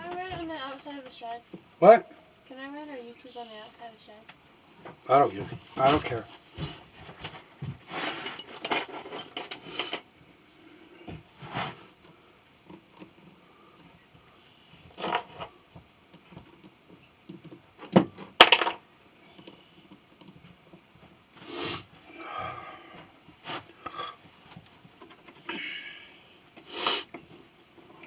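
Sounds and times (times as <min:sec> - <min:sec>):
small metal objects clinking: 0:18.4 - 0:19.6.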